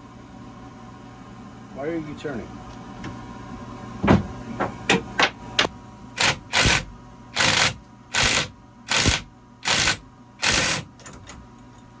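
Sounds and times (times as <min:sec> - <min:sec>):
ratchet wrench clicking: 0:06.2 - 0:06.8, 0:07.4 - 0:10.8.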